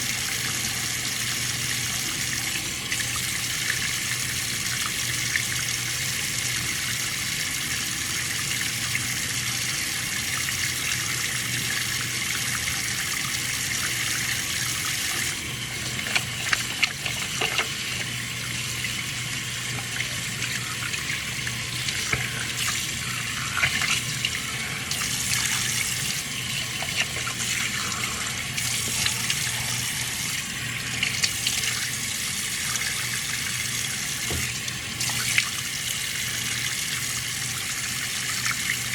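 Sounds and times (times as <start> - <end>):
tap running into sink: 15.0 - 18.2, 21.8 - 22.9, 34.2 - 35.5.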